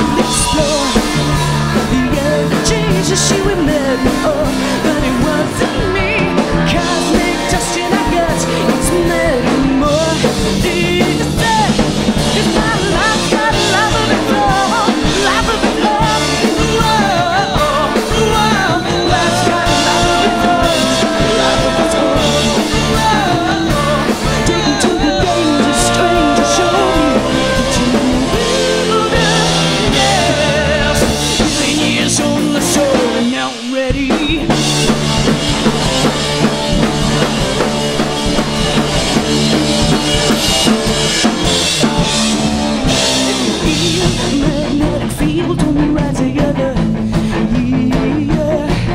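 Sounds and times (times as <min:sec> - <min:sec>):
rock band playing live: 0:00.0 - 0:48.9.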